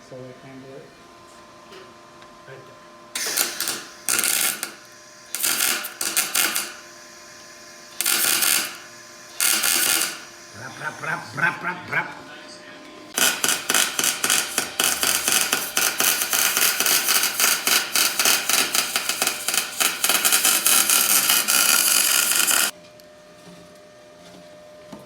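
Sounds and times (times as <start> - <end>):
welder arc crackling: 3.2 - 11.6, 13.1 - 22.7.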